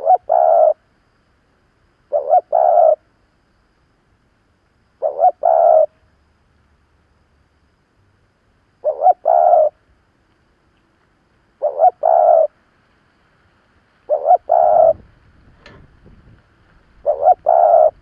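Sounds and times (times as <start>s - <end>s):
dove cooing: 0.0s - 0.8s, 2.1s - 3.0s, 5.0s - 6.0s, 8.8s - 9.8s, 11.6s - 12.5s, 14.1s - 15.1s, 17.0s - 18.0s.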